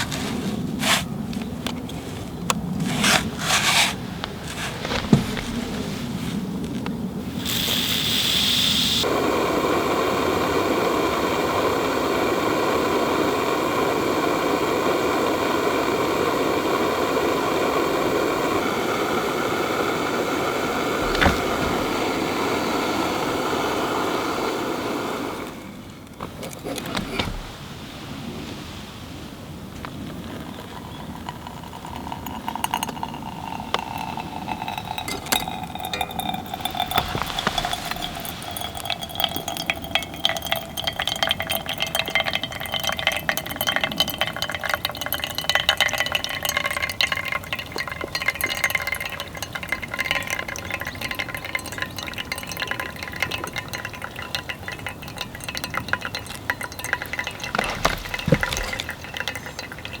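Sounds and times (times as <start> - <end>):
faint liquid sizzle: 7.2 - 25.8, 30.2 - 60.0
utensil clinking in cookware: 30.8 - 60.0.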